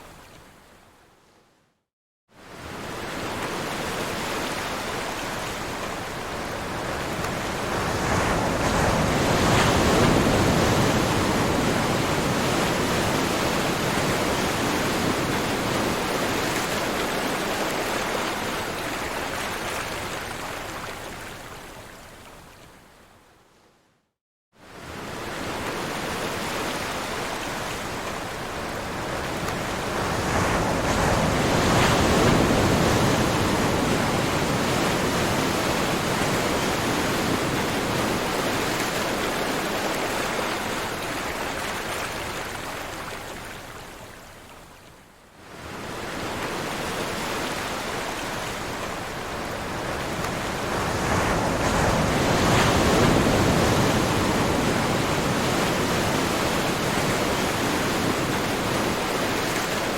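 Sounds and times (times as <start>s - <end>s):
ocean waves washing in: 24.6s - 44.4s, 45.4s - 59.9s.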